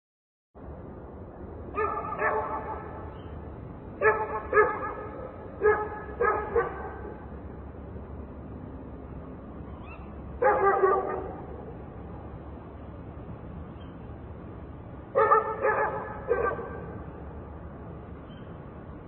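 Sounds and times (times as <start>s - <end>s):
distant traffic hum: 0.6s - 19.0s
dog barking: 1.8s - 3.0s, 4.0s - 7.2s, 10.4s - 11.6s, 15.2s - 17.0s.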